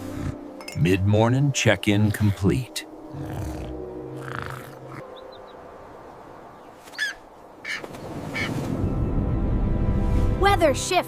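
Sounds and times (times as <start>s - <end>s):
bird chirps and squawks: 6.9s - 8.6s.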